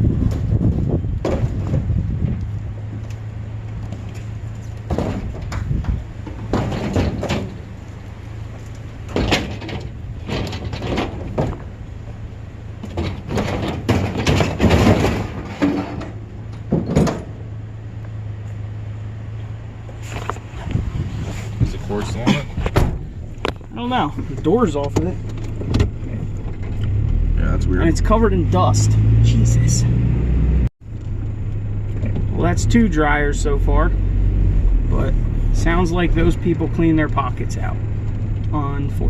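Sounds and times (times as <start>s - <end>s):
sheet metal clunks and scrapes: 4.8s - 7.7s, 9.0s - 11.8s, 12.8s - 17.4s.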